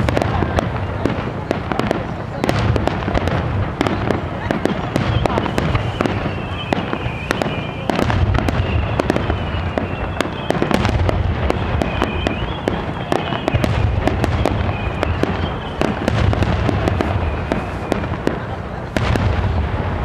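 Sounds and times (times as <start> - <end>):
deep fireworks booms: 0.0 - 20.0
fireworks crackling bursts: 0.0 - 20.0.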